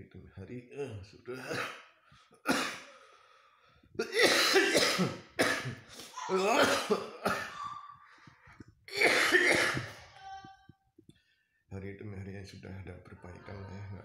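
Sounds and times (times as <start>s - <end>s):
man coughing: 0.8s - 3.0s, 4.0s - 7.8s, 8.9s - 10.1s.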